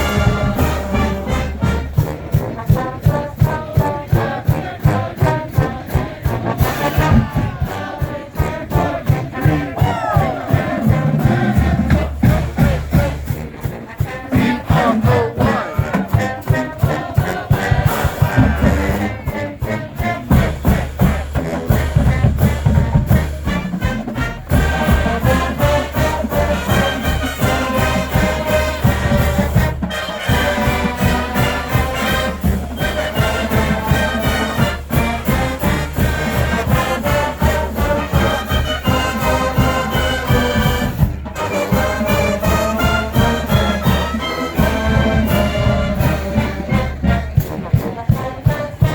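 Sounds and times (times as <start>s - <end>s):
marching band playing: 0.0s - 48.9s
steady drum beat: 0.0s - 48.9s.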